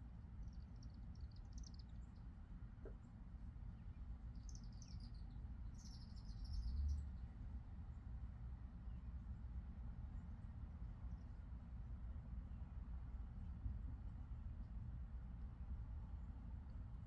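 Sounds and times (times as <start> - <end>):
songbirds twittering: 4.4 - 7.0.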